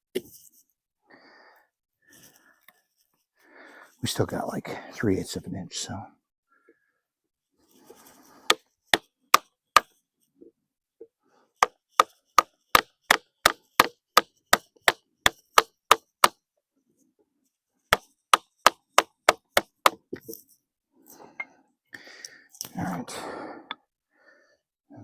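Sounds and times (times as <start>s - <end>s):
mallet striking chisel: 8.5s - 9.9s, 11.6s - 16.4s, 17.9s - 20.0s.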